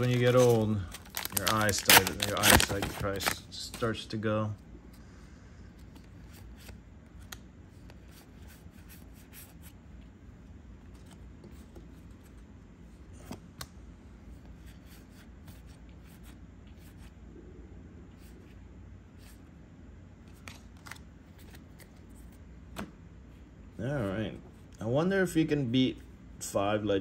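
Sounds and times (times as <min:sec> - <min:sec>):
cards rustling and clicking: 0:00.0 - 0:04.1, 0:05.7 - 0:09.7, 0:20.2 - 0:22.9.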